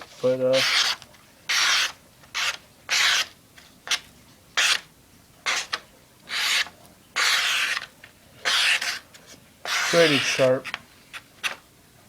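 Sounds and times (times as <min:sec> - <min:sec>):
knife blade rasping through material: 0:00.5 - 0:03.3, 0:04.6 - 0:04.8, 0:05.5 - 0:10.6.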